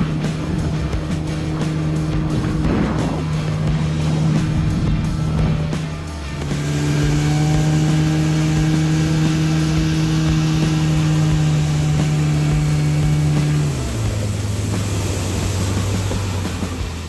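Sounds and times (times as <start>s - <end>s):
outboard motor running: 0.0s - 17.0s.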